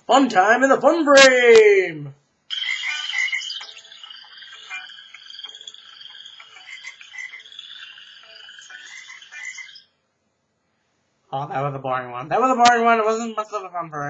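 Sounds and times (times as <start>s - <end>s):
phone ringtone chirping: 2.5s - 9.9s.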